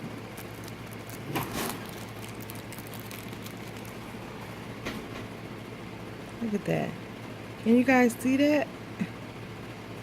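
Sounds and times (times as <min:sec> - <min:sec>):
steady low hum: 0:00.0 - 0:10.0
bead bag rustling: 0:00.3 - 0:04.2.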